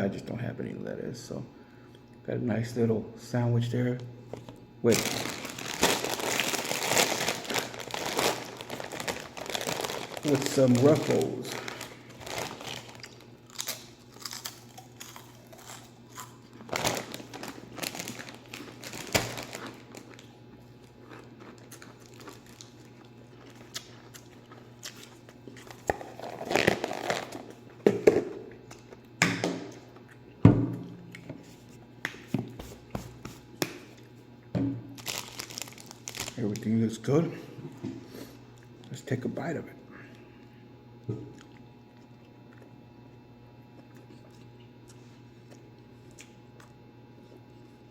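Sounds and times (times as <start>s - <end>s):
chip bag crinkling: 4.8s - 27.7s, 35.0s - 36.8s.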